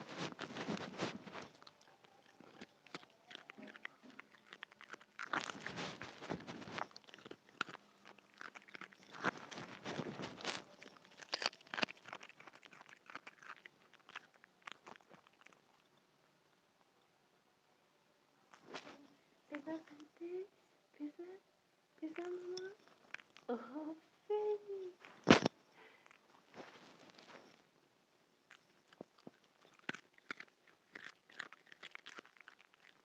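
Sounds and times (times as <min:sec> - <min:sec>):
dog crunching carrot: 0:00.0 - 0:15.9, 0:22.0 - 0:23.5, 0:28.5 - 0:33.0.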